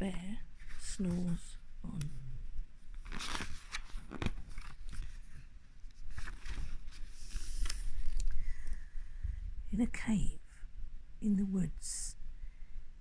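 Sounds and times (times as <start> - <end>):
crackling handling rustles: 2.8 - 8.8.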